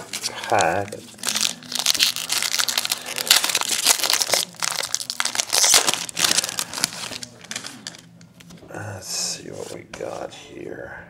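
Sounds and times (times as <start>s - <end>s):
card pack wrapper crinkling and tearing: 0.0s - 8.5s.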